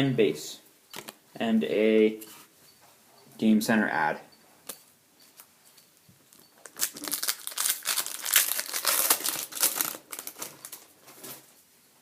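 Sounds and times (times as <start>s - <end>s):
card pack wrapper crinkling: 6.3s - 10.9s.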